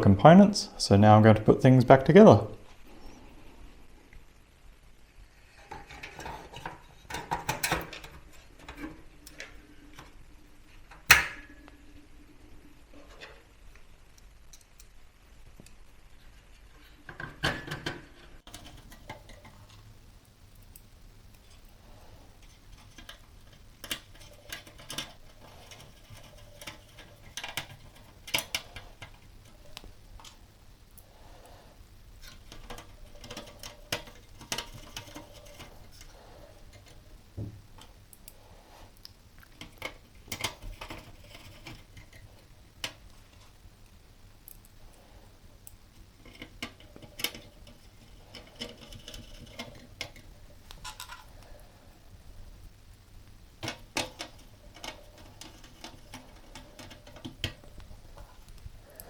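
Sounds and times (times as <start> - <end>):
computer parts clicking and clattering: 17.4 - 19.8, 22.4 - 29.5, 32.2 - 36.1, 39.6 - 43.0, 46.2 - 51.3, 53.6 - 57.9.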